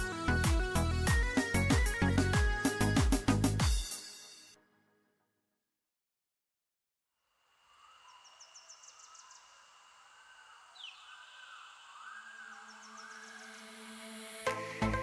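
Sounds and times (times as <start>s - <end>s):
ambient music chirping tones: 7.7s - 15.0s.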